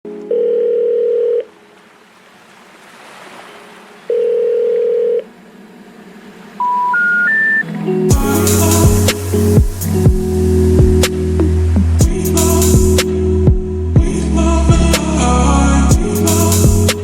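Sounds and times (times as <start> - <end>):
telephone ringback tone: 0.1 - 1.6, 4.1 - 5.3, 6.6 - 7.7
rising short beeps: 6.6 - 7.7
heavy bass music: 8.1 - 17.0.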